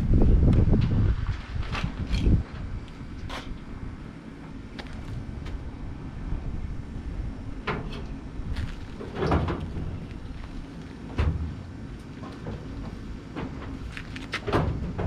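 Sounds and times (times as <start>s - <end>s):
low rumble: 0.0s - 15.0s
knocks and clunks: 7.6s - 15.0s.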